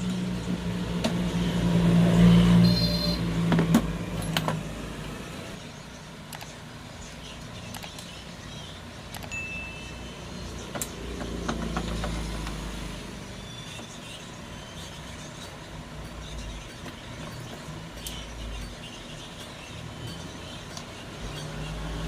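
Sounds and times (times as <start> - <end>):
road traffic noise: 0.0 - 22.0
vehicle engine: 0.0 - 22.0
sharp clicks: 6.3 - 6.6, 7.4 - 8.2, 9.1 - 9.4.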